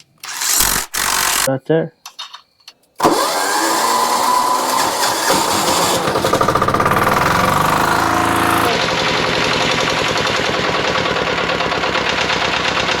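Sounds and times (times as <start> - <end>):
diesel generator engine running: 3.0 - 13.0.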